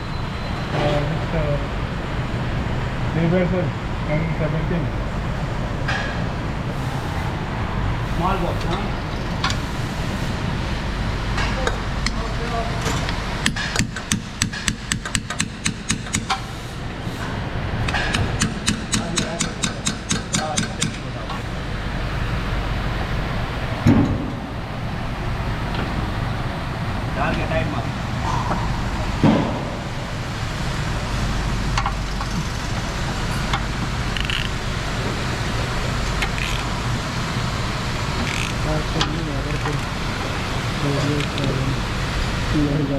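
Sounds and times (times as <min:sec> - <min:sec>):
low steady hum: 0:00.0 - 0:42.9
sharp knock of hand tools: 0:13.4 - 0:16.4, 0:17.9 - 0:21.0
hammer tapping on metal: 0:13.4 - 0:16.5, 0:17.9 - 0:21.1.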